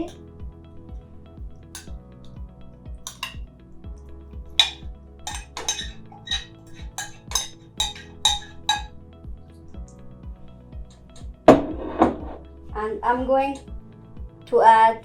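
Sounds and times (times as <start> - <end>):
background music with beat: 0.0 - 14.8
metal utensil clinking on dish: 1.8 - 2.0, 3.1 - 3.4, 4.6 - 8.9.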